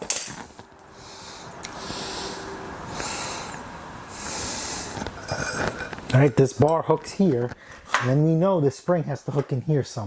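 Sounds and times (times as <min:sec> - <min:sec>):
person breathing hard: 0:00.8 - 0:05.9, 0:07.6 - 0:07.9.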